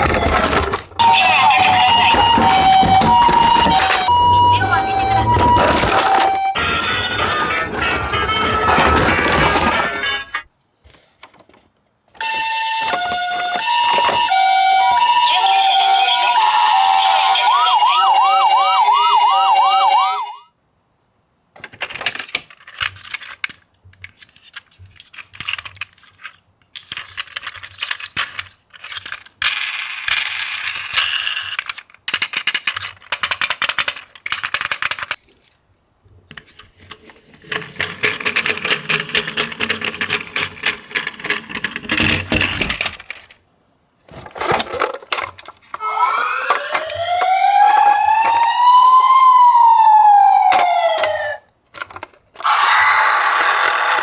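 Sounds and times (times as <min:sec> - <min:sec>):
toys clinking and clattering: 0:00.0 - 0:04.2, 0:04.9 - 0:10.5, 0:11.3 - 0:17.2, 0:36.3 - 0:43.4, 0:44.1 - 0:48.5, 0:50.5 - 0:54.0
music with wavering siren tone: 0:01.0 - 0:07.5, 0:46.8 - 0:51.3.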